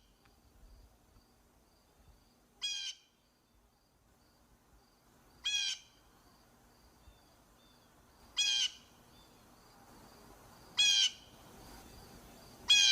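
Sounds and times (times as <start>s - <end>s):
blue jay calling: 2.6s - 3.1s, 5.4s - 5.9s, 8.4s - 9.3s, 10.8s - 11.3s, 12.7s - 12.9s.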